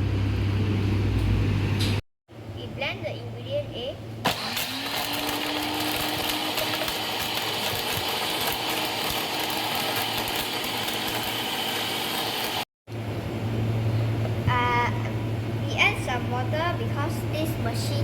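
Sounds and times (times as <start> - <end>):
electric blender grinding: 4.2 - 12.7.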